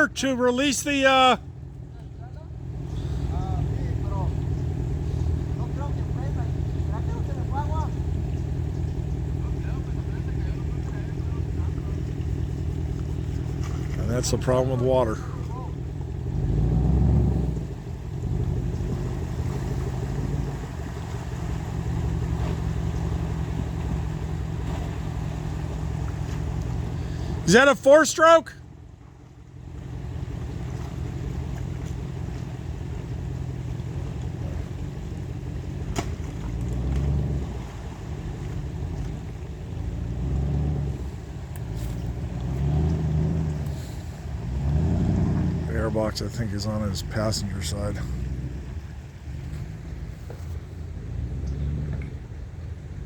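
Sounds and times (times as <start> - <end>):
vehicle engine droning: 0.0 - 53.0.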